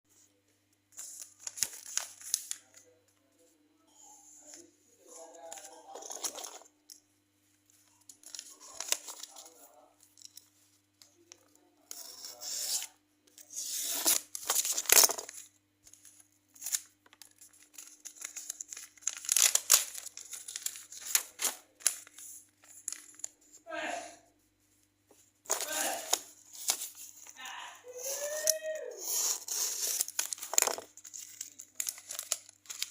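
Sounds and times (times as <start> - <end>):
packaging crinkling and tearing: 1.0 - 2.7, 13.7 - 23.4, 25.5 - 27.3, 29.0 - 32.9.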